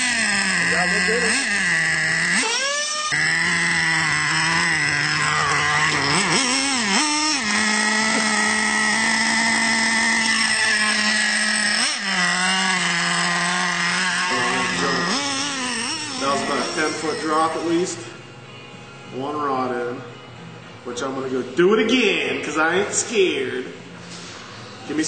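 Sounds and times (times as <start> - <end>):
small nitro engine revving: 0.0 - 18.0.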